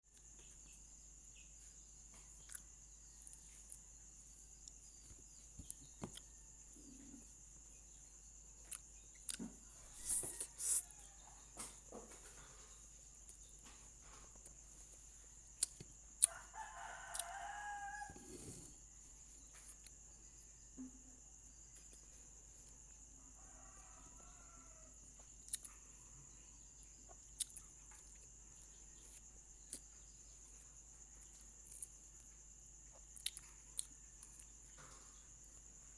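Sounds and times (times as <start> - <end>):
rooster crowing: 9.8 - 11.7, 16.2 - 18.7, 23.2 - 25.0.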